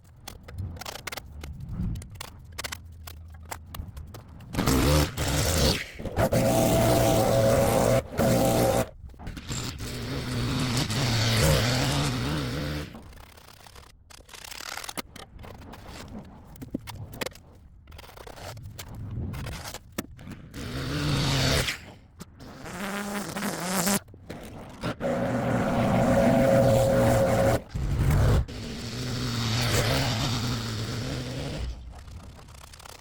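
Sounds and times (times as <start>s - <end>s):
choppy scraping and clicking: 0.0s - 33.0s
small petrol engine running: 4.5s - 13.1s, 25.0s - 33.0s.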